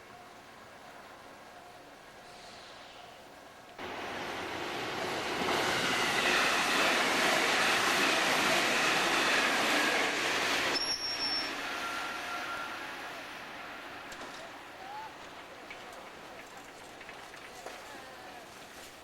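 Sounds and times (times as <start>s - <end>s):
electric train passing: 0.0s - 17.1s
train wheels squealing: 6.1s - 14.1s.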